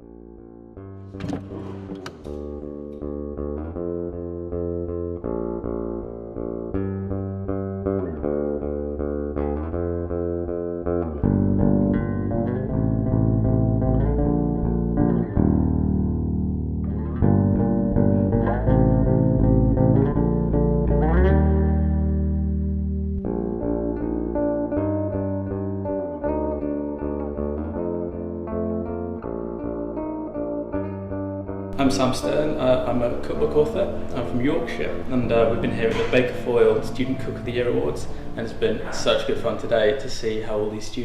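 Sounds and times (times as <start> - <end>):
instrumental guitar and bass music: 0.0 - 40.6.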